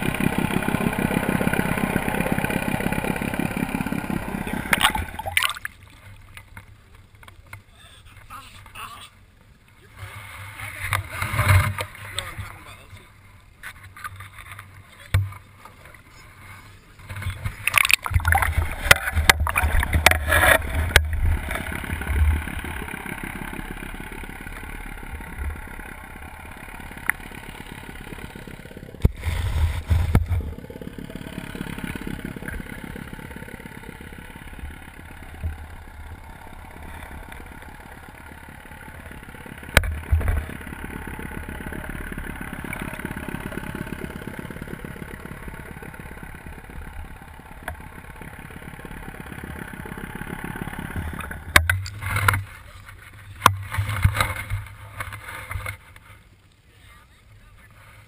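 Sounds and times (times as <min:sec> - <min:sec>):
water rushing against boat hull: 0:00.0 - 0:07.6, 0:09.9 - 0:12.7, 0:13.3 - 0:23.3, 0:29.0 - 0:30.6
water splashing and buffeting: 0:00.0 - 0:58.0.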